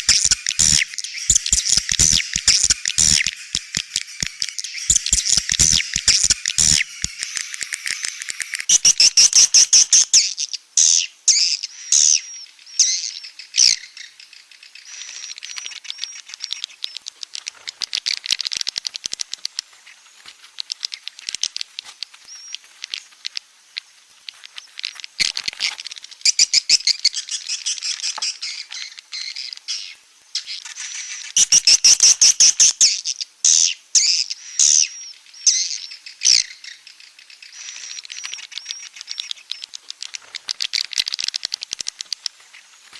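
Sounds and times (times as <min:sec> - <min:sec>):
twittering swiftlet chirps: 0:00.0 - 0:10.0.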